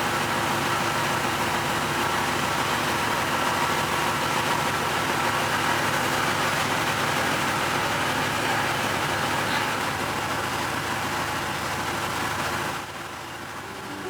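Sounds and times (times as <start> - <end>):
ferry engine running: 13.3 - 14.0.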